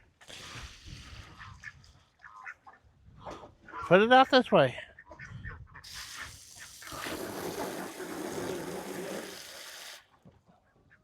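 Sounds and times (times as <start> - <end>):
running water gushing: 5.8 - 10.1.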